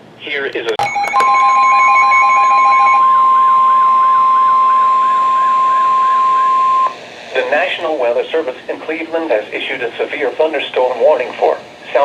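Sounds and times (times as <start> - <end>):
short beeps: 0.8 - 7.0
loud steady alarm tone: 0.8 - 7.9.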